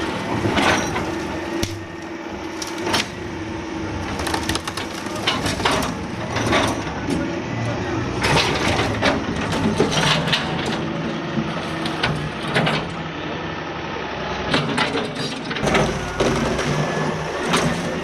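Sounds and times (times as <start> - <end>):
heavy machine engine running: 0.0 - 18.0
wood cracking and splintering: 0.8 - 3.4, 4.0 - 6.6.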